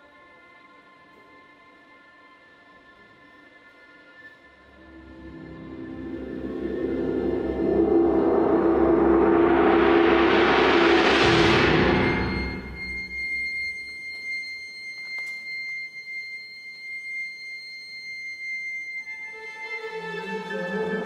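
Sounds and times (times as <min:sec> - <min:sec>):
strings sustained notes: 0:04.7 - 0:13.5, 0:19.2 - 0:21.0
high held note: 0:05.3 - 0:13.9
percussion crash: 0:05.5 - 0:13.8.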